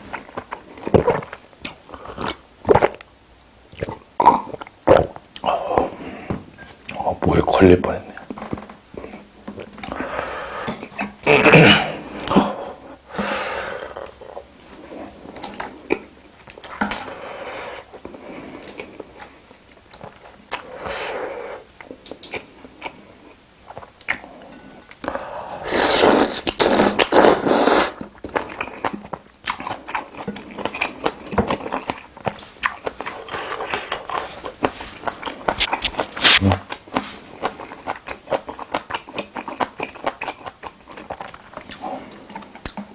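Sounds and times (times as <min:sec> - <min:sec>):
chewing with wet smacks: 0:21.7 - 0:25.2, 0:28.0 - 0:42.9.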